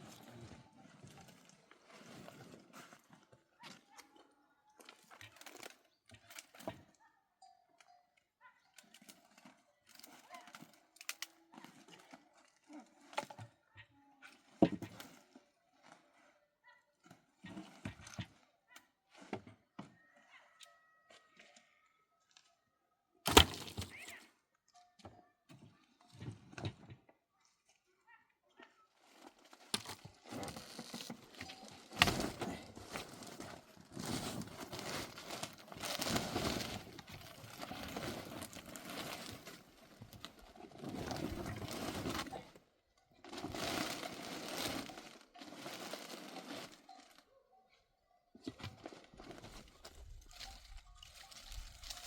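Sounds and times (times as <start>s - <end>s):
rustling and crumpling: 28.9s - 47.3s, 48.4s - 52.0s.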